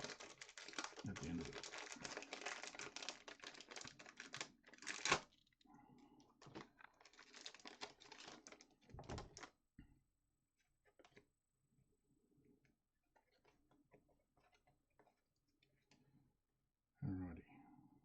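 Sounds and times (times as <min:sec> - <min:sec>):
card pack tearing and crinkling: 0:00.0 - 0:05.3, 0:06.4 - 0:09.5
cards rustling: 0:00.0 - 0:05.5, 0:06.4 - 0:09.5.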